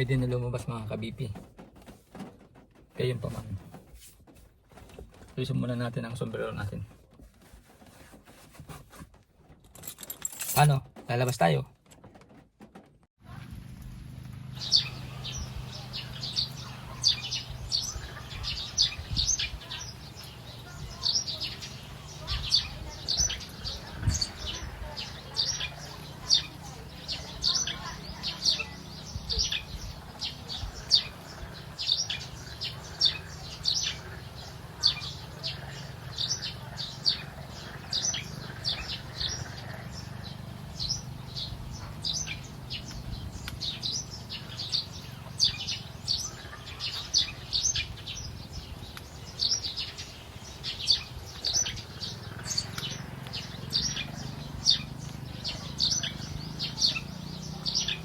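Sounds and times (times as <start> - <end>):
small birds chirping: 13.3 - 58.0.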